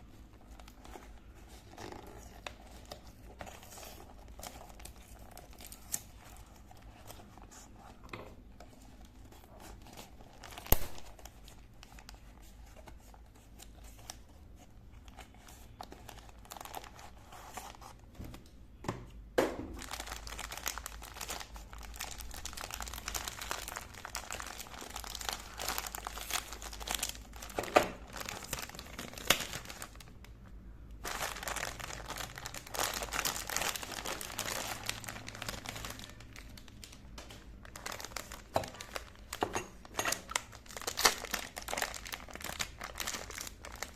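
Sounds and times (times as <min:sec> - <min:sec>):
packaging crinkling: 0:08.7 - 0:14.3, 0:15.0 - 0:17.8, 0:19.8 - 0:30.2, 0:31.0 - 0:43.9.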